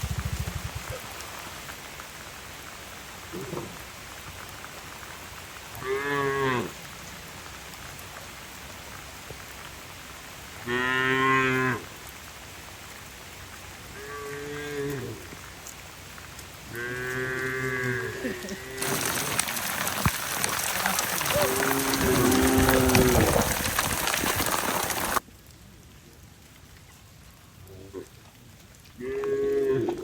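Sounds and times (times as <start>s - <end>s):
heavy rain hissing: 0.0s - 25.2s
cattle mooing: 20.8s - 23.6s.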